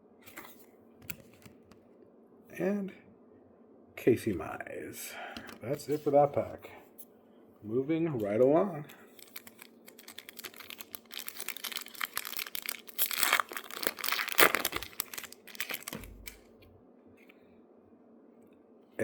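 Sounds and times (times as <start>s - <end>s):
foil wrapper tearing and crinkling: 9.2s - 16.5s.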